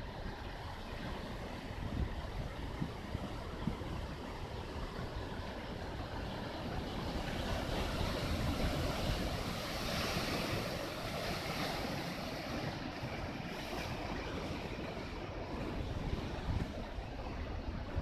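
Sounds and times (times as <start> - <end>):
rough surf: 0.0 - 18.0
wind buffeting microphone: 0.0 - 18.0.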